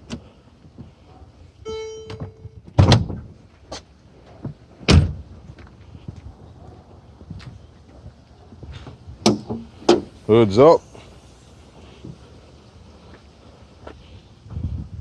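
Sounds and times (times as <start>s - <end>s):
car warning chime: 1.6s - 2.6s
heavy thunks of car latches: 2.1s - 3.3s.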